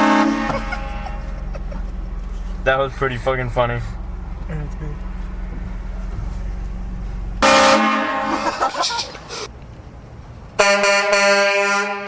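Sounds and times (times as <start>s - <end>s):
air train horn chord blasts: 0.0s - 1.2s, 7.4s - 8.4s
vehicle low rumble: 0.0s - 12.0s.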